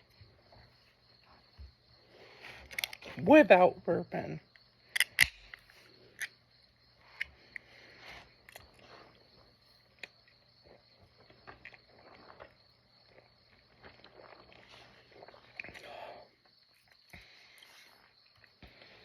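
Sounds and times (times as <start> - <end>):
person gulping drink: 11.2 - 16.3.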